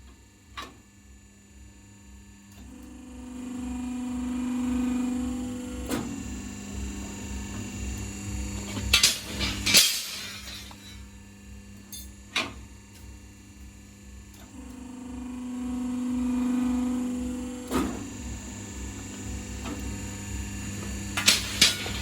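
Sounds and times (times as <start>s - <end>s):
machine motor humming: 1.0s - 22.0s
machine clunk: 8.7s - 11.0s, 21.1s - 22.0s
metal clanks: 8.9s - 11.0s, 21.2s - 22.0s.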